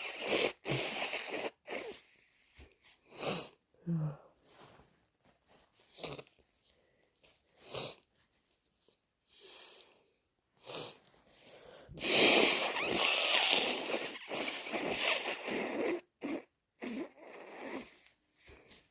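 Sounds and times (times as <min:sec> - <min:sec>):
person blowing nose loudly: 0:00.0 - 0:02.2, 0:03.1 - 0:03.6, 0:12.0 - 0:18.1
person sniffing: 0:00.0 - 0:02.2, 0:02.9 - 0:04.7, 0:09.3 - 0:18.0.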